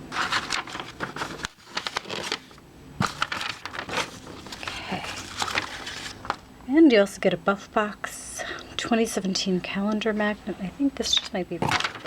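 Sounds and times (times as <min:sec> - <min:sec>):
packaging rustling and crinkling: 0:00.1 - 0:06.4.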